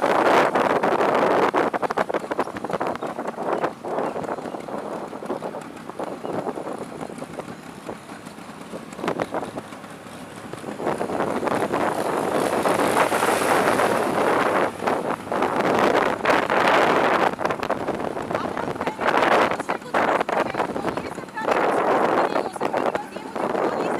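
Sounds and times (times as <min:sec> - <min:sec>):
scooter engine running: 0:00.0 - 0:23.9
wind buffeting microphone: 0:00.0 - 0:23.9.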